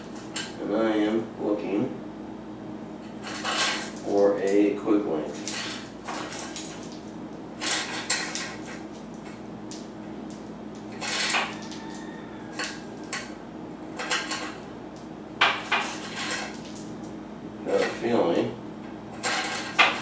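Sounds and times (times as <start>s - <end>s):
bicycle chain clinking and rattling: 19.2s - 20.0s.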